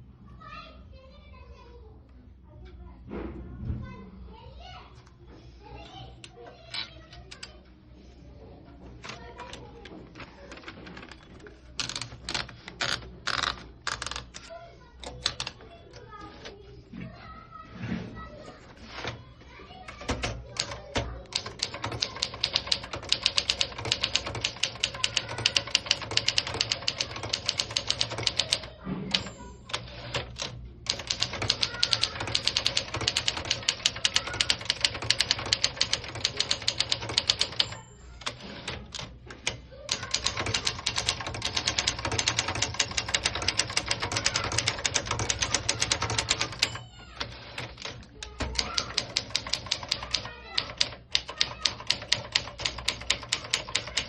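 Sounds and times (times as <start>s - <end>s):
typewriter keystrokes clacking: 9.0s - 15.6s, 19.8s - 54.0s
typewriter bell ring: 21.6s - 39.0s, 40.0s - 47.9s.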